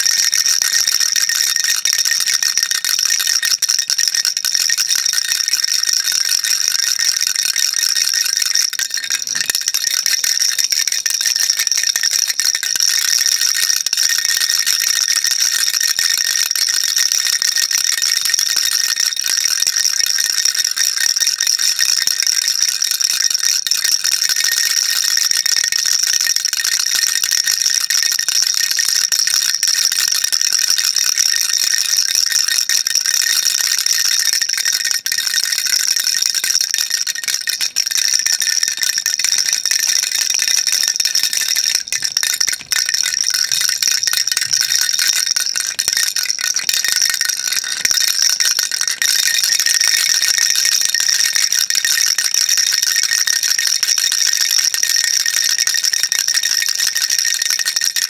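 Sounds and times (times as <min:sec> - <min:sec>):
baby rattle shaken: 0:00.0 - 0:15.3, 0:32.8 - 0:51.9.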